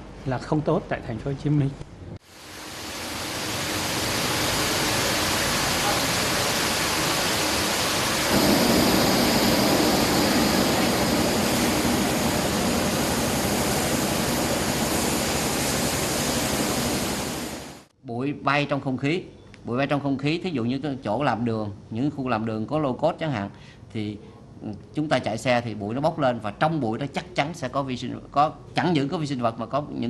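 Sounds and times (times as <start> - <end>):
loud steady rushing noise: 2.3 - 17.9.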